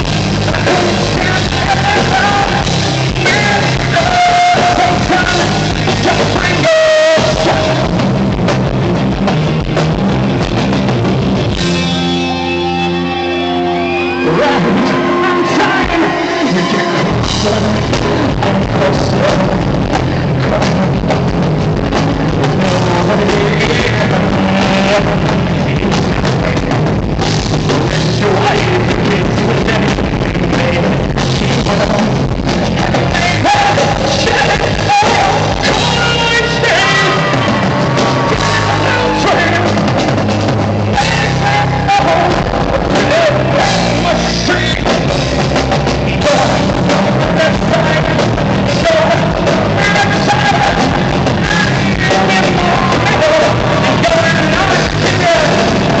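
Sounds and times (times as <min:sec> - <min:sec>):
person singing: 0:00.0 - 0:08.0, 0:22.3 - 0:26.7, 0:27.7 - 0:56.0
rock band playing live: 0:00.0 - 0:56.0.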